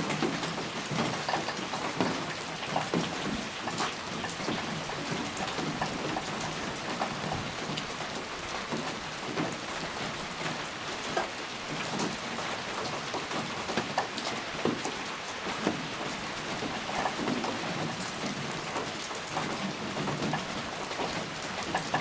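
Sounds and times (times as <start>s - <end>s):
raindrops hitting close by: 0.0s - 22.0s
steady rain hiss: 0.0s - 22.0s.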